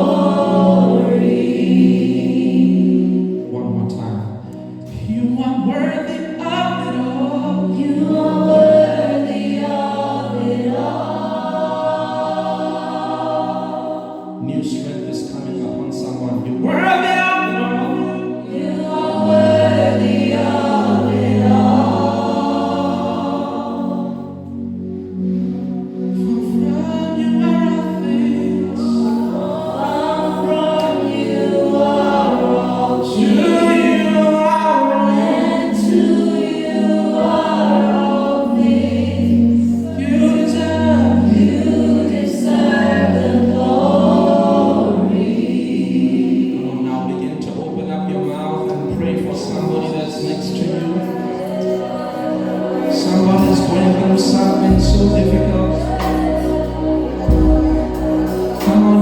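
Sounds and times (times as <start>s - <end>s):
choir singing in harmony: 0.0s - 59.0s
low held bass notes: 52.4s - 59.0s.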